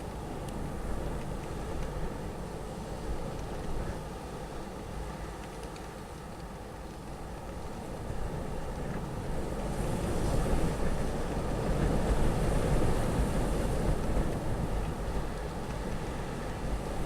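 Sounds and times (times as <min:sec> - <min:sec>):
wind buffeting microphone: 0:08.0 - 0:17.0.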